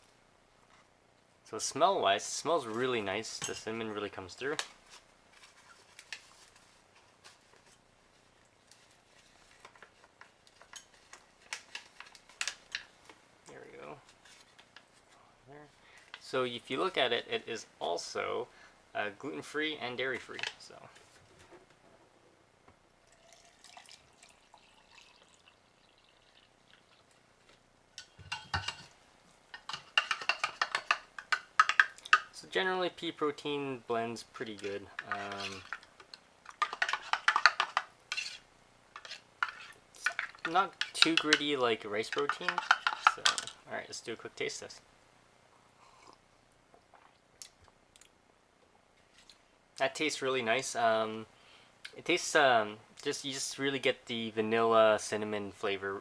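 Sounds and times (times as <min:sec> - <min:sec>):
water pouring: 0:23.0 - 0:27.3.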